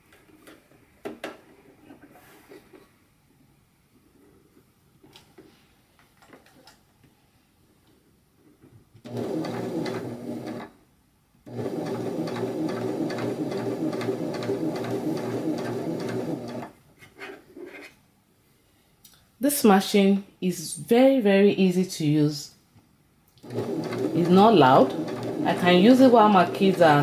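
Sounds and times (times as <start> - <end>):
sewing machine stitching: 9.0 - 10.8, 11.5 - 16.7, 23.4 - 27.0.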